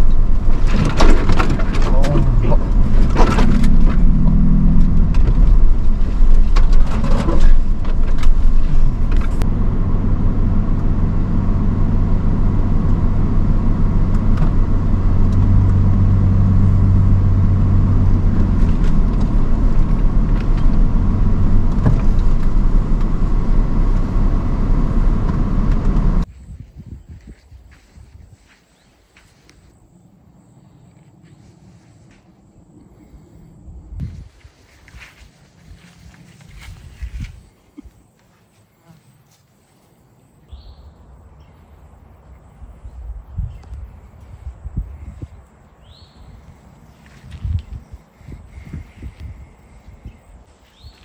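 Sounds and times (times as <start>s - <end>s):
knocks and rattles: 0.0s - 9.4s
off-road vehicle engine running: 0.0s - 28.6s, 40.0s - 51.0s.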